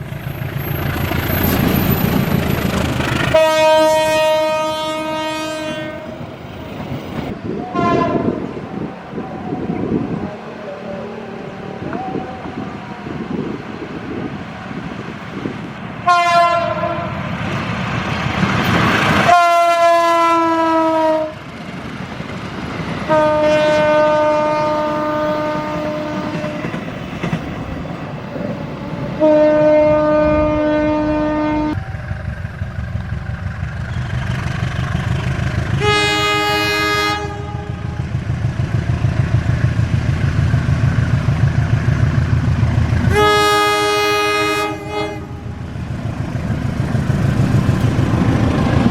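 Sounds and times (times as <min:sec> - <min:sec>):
train wheel clatter: 0:00.0 - 0:04.7, 0:20.4 - 0:30.4
train passing rumble: 0:00.0 - 0:48.9
locomotive air horn blasts: 0:03.3 - 0:06.2, 0:07.7 - 0:08.5, 0:16.0 - 0:17.3, 0:19.2 - 0:21.4, 0:23.1 - 0:26.8, 0:29.2 - 0:31.9, 0:35.8 - 0:38.1, 0:43.1 - 0:45.6.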